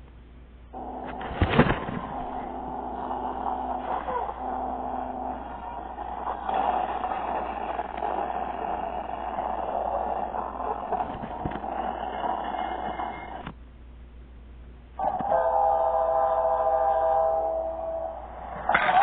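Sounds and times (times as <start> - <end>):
toy train whirring: 2.3 - 13.4, 15.0 - 19.0.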